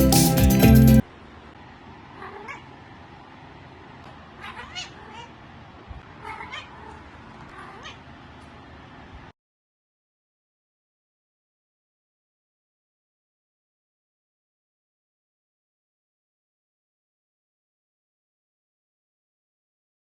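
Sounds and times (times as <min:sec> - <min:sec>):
backing music: 0:00.0 - 0:01.0
cat meowing: 0:02.2 - 0:02.7, 0:04.4 - 0:05.4, 0:06.2 - 0:08.1.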